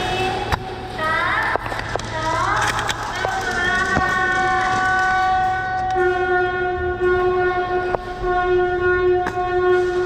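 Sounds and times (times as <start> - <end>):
loud steady horn-like tone: 3.8 - 10.0.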